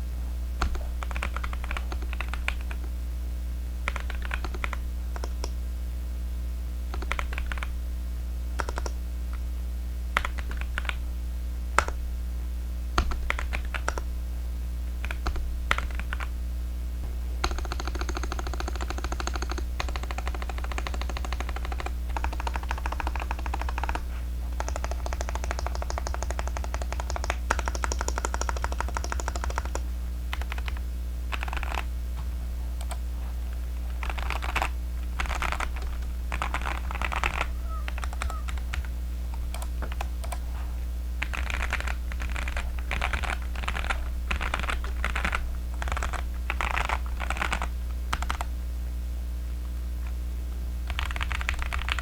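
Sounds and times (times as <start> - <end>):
mechanical keyboard typing: 0.6 - 2.9, 3.9 - 5.6, 6.9 - 7.7, 8.6 - 9.0, 10.2 - 11.0, 13.0 - 14.0, 15.0 - 16.3, 17.4 - 31.9, 33.8 - 40.5, 41.2 - 48.5, 50.9 - 52.0
low hum: 7.7 - 27.8, 28.7 - 50.9.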